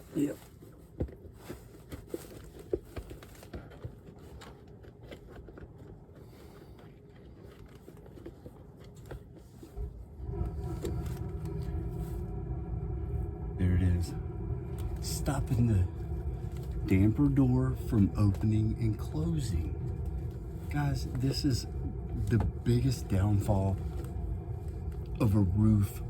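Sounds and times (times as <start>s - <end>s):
humming motor rumble: 9.5s - 26.0s.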